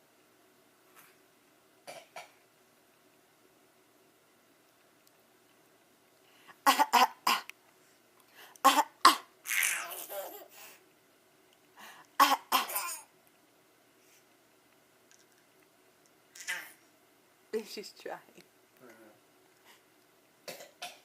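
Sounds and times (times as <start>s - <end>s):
fake coughs: 12.2s - 13.1s.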